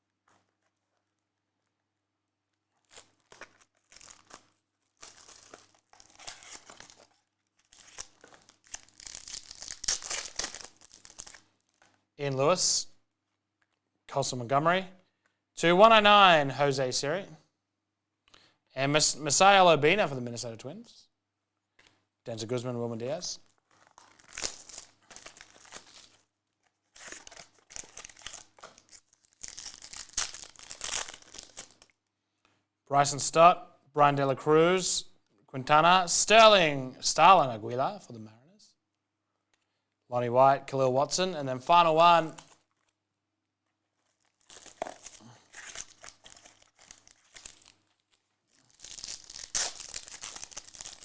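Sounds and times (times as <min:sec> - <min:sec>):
wrapper crinkling and tearing: 0:02.5 - 0:12.1, 0:23.5 - 0:32.1, 0:42.1 - 0:51.0.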